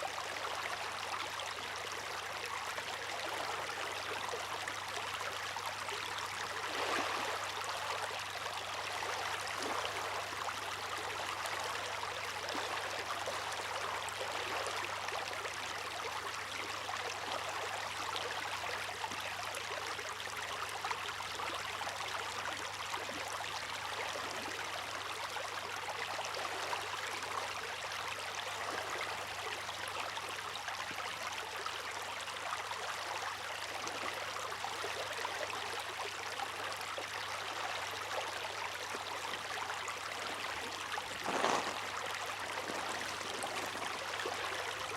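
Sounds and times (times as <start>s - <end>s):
water rushing and splashing: 40.1s - 44.9s.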